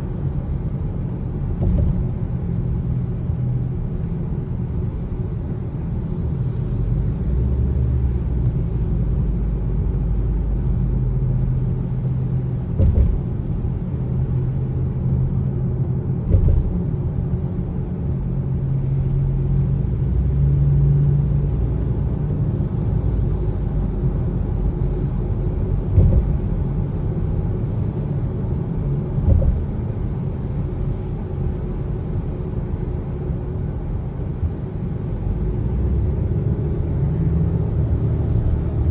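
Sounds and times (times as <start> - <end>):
car cabin rumble and hum: 0.0 - 38.9
short thumps: 1.6 - 2.2, 12.6 - 13.8, 16.2 - 16.8, 25.9 - 26.5, 29.2 - 30.0.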